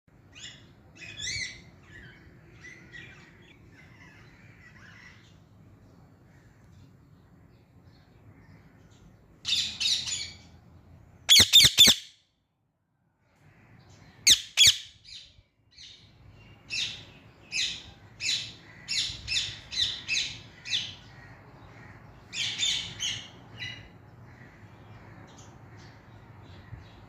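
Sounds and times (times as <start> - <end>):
parakeet squawk: 0.4 - 5.3, 11.3 - 12.1, 14.2 - 15.0
parakeet chirping: 11.3 - 12.1, 14.2 - 15.2.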